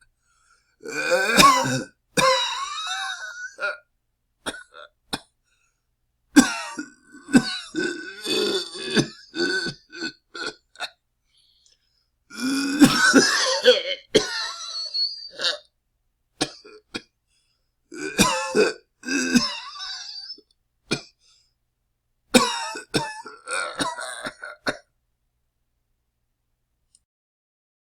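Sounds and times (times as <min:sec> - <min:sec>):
man coughing: 0:00.9 - 0:03.6, 0:06.4 - 0:09.7, 0:12.6 - 0:14.8, 0:18.1 - 0:20.2, 0:22.4 - 0:24.8.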